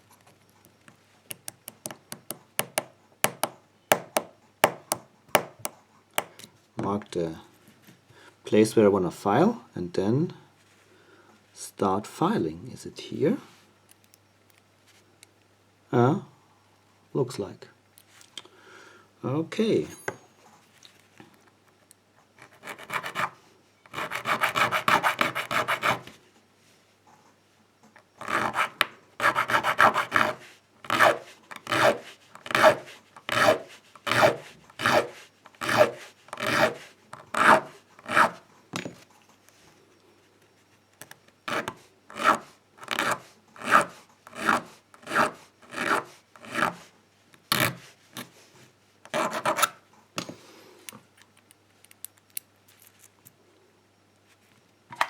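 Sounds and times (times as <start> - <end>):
hand file rasping on key: 1.3 - 6.3, 22.4 - 26.1, 28.2 - 38.4, 41.5 - 46.9, 49.1 - 49.7.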